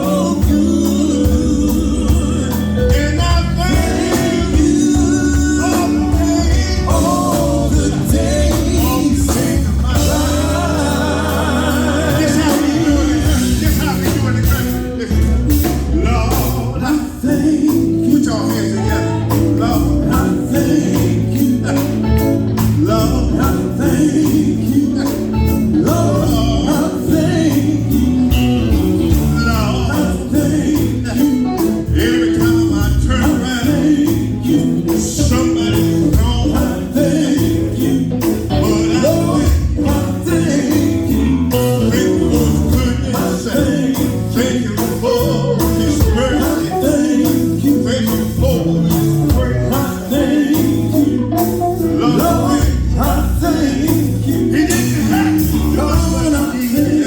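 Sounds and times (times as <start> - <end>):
person singing: 0.0 - 28.4
gospel band playing: 0.0 - 57.0.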